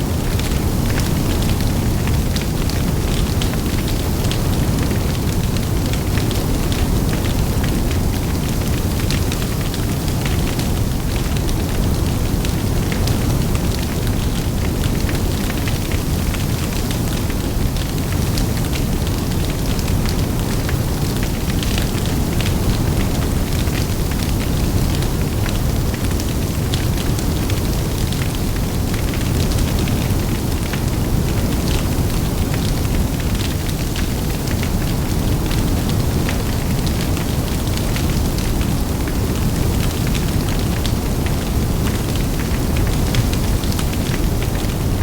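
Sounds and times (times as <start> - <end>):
low rumble of flames: 0.0 - 45.0
fire crackling and popping: 0.1 - 45.0.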